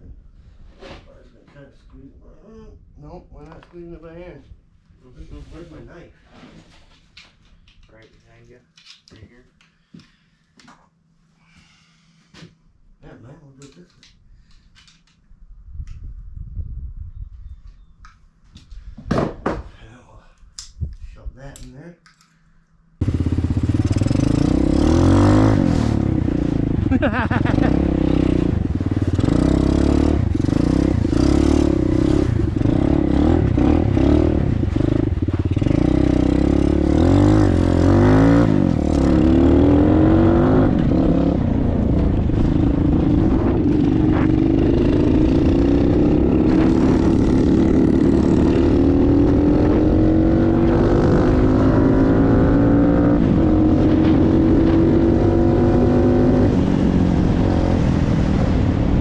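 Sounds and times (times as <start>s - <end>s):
dirt bike engine idling: 23.0s - 24.3s.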